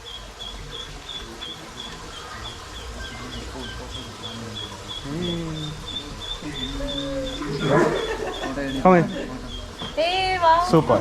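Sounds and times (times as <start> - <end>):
faint voices: 0.0 - 11.0.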